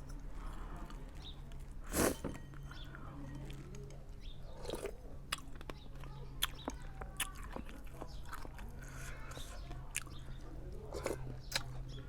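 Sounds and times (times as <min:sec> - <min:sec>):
eating sounds: 0:04.5 - 0:12.0.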